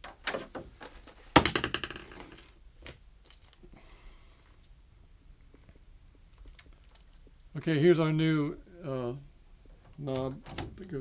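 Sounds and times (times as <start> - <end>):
metal door latch rattling clack: 10.1 - 11.0.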